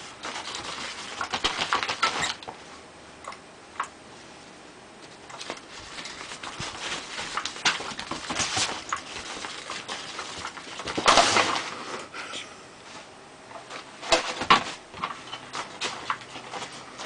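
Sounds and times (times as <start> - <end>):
rustling scuffle: 0.0 - 2.7, 5.3 - 12.0, 12.8 - 17.0.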